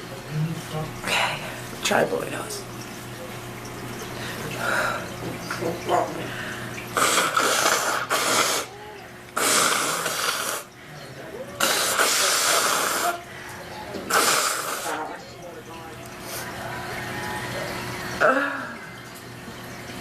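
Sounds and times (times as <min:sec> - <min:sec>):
woman blowing her nose: 0:07.0 - 0:08.7, 0:09.4 - 0:10.7, 0:11.6 - 0:13.2, 0:14.1 - 0:15.0.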